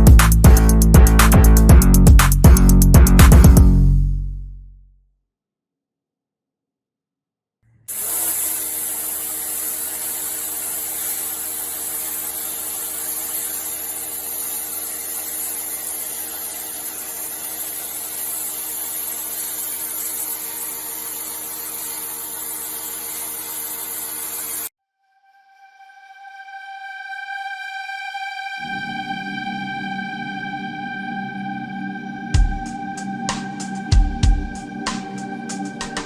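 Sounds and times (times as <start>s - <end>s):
pressure washer machine hum: 7.9s - 24.7s
water jet hissing: 7.9s - 24.7s.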